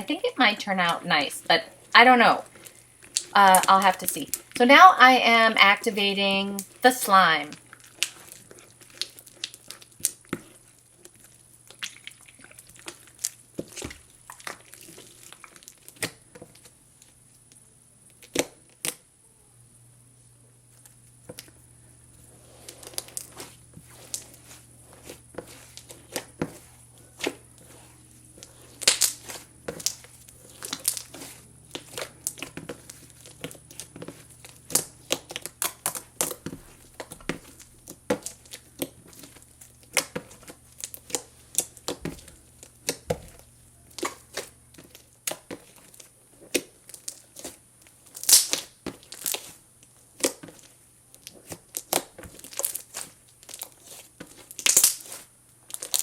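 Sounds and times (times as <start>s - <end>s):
sticky slime clicking and popping: 48.2s - 49.4s.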